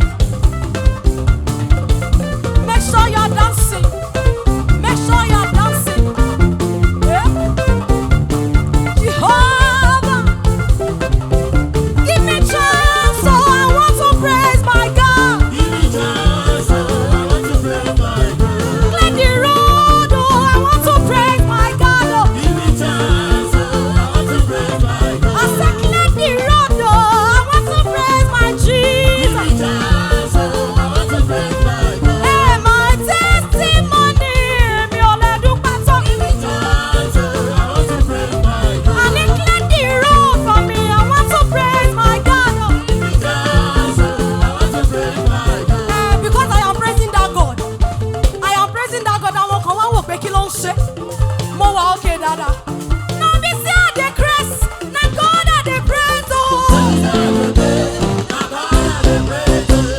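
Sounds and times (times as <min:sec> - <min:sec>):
fast drum beat: 0:00.0 - 0:59.9
person singing: 0:09.0 - 0:10.4, 0:12.0 - 0:47.6, 0:55.7 - 0:59.9.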